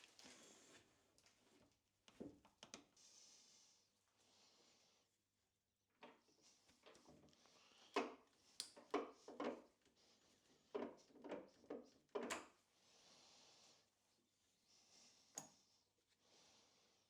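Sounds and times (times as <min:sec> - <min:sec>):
tap clicking and creaking: 0:02.1 - 0:02.9, 0:06.0 - 0:09.7, 0:10.7 - 0:12.5.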